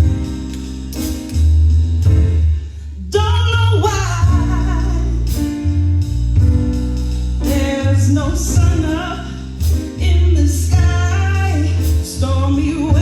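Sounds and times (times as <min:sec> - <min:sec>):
live band playing jazz ballad: 0:00.0 - 0:02.9, 0:03.5 - 0:13.0.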